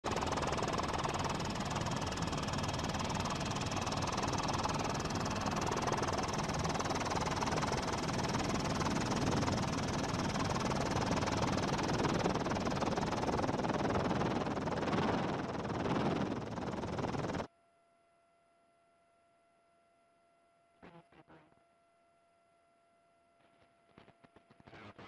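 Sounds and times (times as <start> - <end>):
helicopter engine and rotor drone: 0.1 - 17.5.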